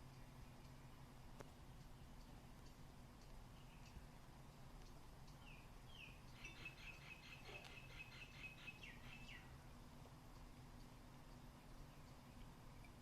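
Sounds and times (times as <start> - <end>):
low steady hum: 0.0 - 13.0
small bird chirping and trilling: 4.8 - 9.6.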